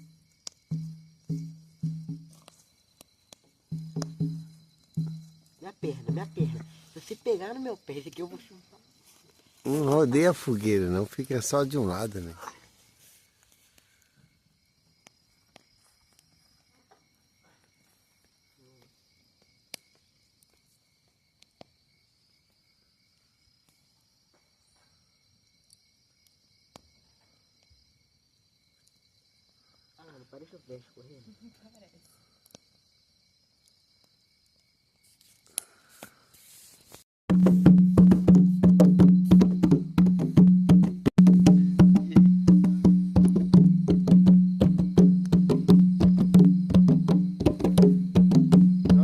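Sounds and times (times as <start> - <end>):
night insects chorus: 0.0 - 37.0, 37.7 - 49.0
fast clacking percussion beat: 0.7 - 2.3, 3.7 - 6.7, 37.3 - 49.0.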